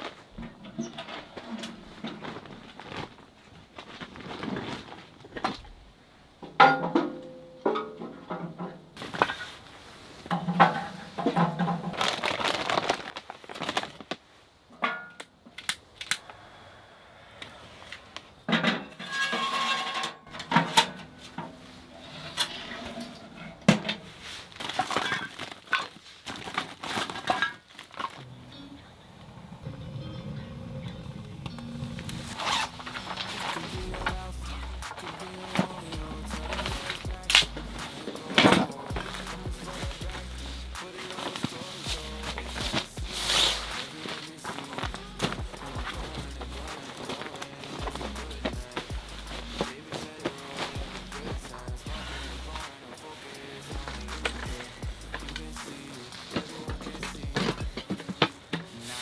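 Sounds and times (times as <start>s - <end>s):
background music: 29.7s - 59.0s
knocks and clatter of gear: 53.7s - 58.8s.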